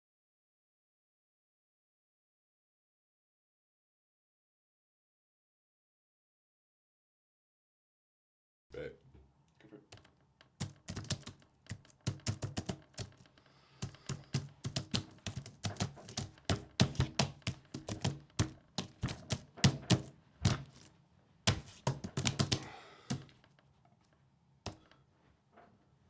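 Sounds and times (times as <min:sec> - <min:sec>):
typing on a keyboard: 0:09.9 - 0:20.9, 0:21.5 - 0:23.4.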